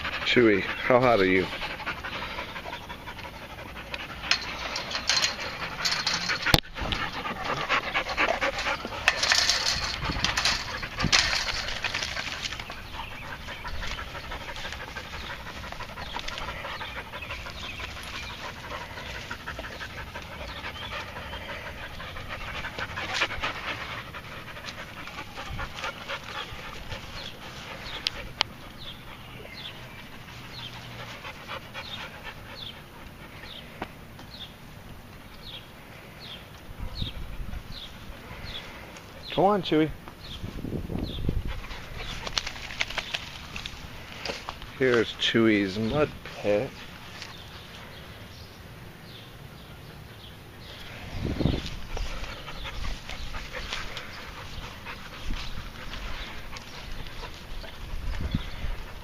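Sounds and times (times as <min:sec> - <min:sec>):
dog panting: 0:00.0 - 0:33.7, 0:41.3 - 0:42.9, 0:51.7 - 0:59.0.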